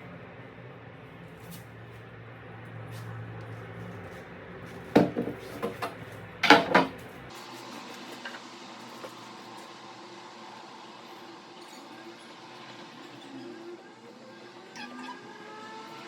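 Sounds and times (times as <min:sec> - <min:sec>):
hard objects knocking and clanking: 0:04.9 - 0:07.0.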